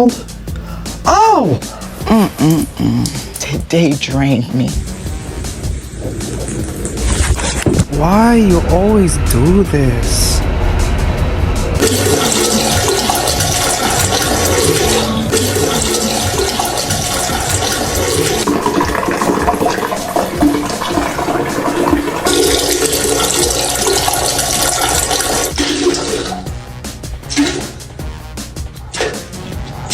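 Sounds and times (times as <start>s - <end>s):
water gushing: 11.8s - 26.6s.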